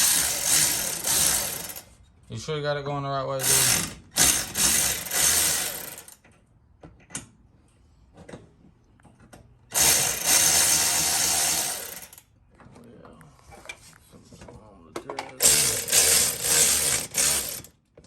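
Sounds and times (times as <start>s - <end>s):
power tool driving bolts: 0.0s - 2.0s, 3.4s - 7.3s, 9.2s - 12.3s, 15.2s - 18.0s.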